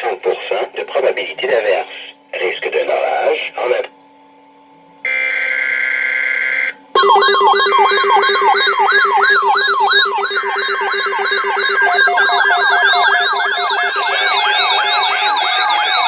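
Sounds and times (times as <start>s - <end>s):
buzzy digital data burst: 7.0s - 16.0s
warbling siren-like alert tone: 7.0s - 16.0s.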